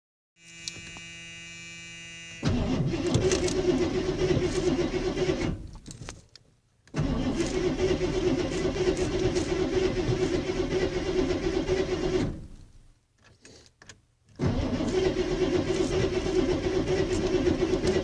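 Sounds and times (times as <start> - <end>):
engine starter cranking: 2.4 - 5.8, 7.0 - 12.8, 14.4 - 18.0.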